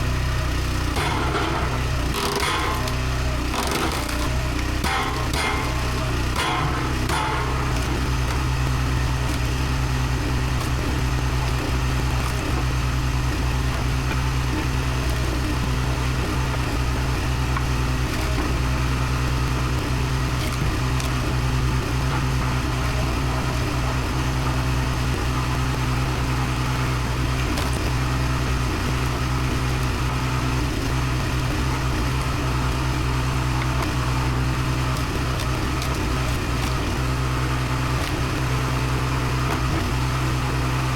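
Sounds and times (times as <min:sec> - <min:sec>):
engine running: 0:00.0 - 0:40.9
wood splitting pops: 0:00.9 - 0:09.6.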